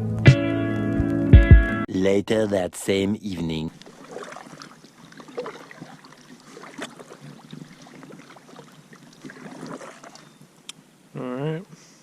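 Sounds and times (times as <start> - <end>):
water lapping around kayak: 3.7 - 10.6.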